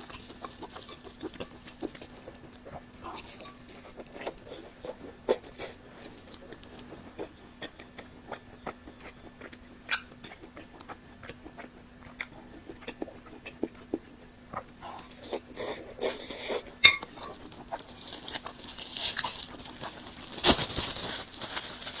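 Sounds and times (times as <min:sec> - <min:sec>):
wet mouth clicks and chewing: 0:00.0 - 0:20.6
crunching bites: 0:14.6 - 0:22.0.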